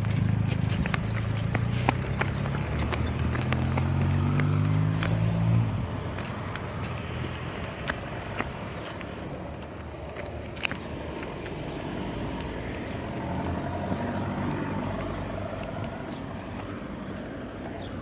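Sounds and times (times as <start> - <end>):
vehicle driving past: 0.0 - 5.9.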